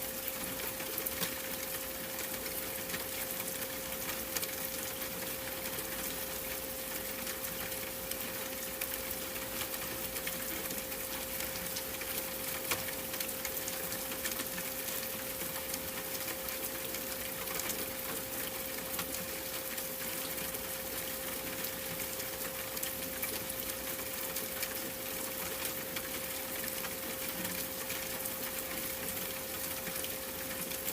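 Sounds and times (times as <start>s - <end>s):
rain falling: 0.0s - 30.9s.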